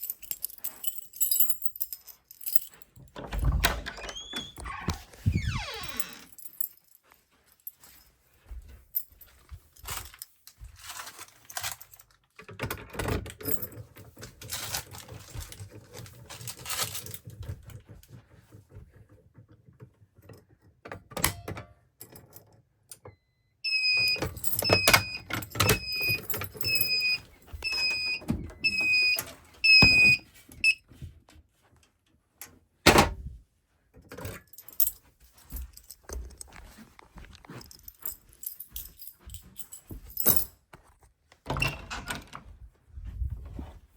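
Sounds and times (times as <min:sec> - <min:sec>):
handling clicks and knocks: 0:00.0 - 0:22.4, 0:23.8 - 0:30.8, 0:33.9 - 0:43.8
fire alarm beeping: 0:23.2 - 0:30.8.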